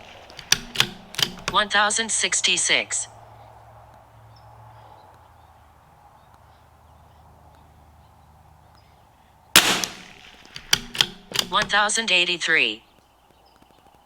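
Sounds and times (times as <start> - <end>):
rifle shot: 9.6 - 11.6.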